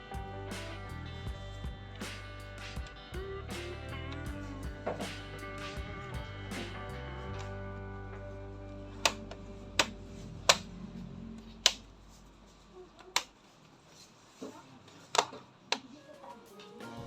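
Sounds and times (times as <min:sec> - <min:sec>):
background music: 0:00.0 - 0:11.7, 0:16.2 - 0:17.0.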